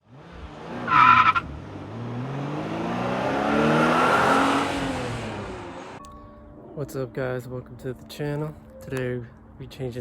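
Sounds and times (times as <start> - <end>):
car engine accelerating: 0.0 - 6.0.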